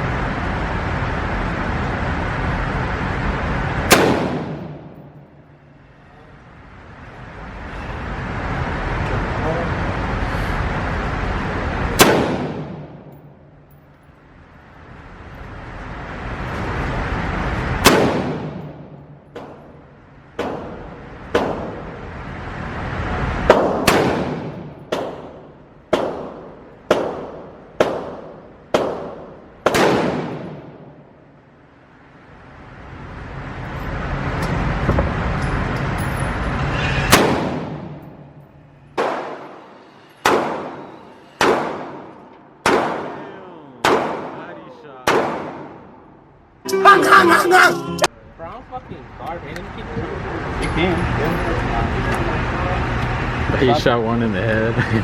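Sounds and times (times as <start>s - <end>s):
gunshots with ringing tail: 3.9s - 5.0s, 12.0s - 13.1s, 23.5s - 31.0s, 40.2s - 40.8s, 41.4s - 46.0s.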